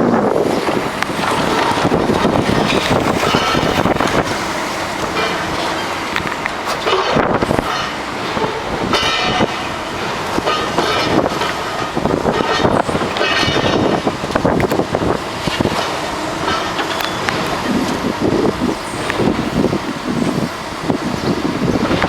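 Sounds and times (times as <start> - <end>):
metal and rubble crashing: 0.6 - 18.5
metal screeching: 2.2 - 6.0.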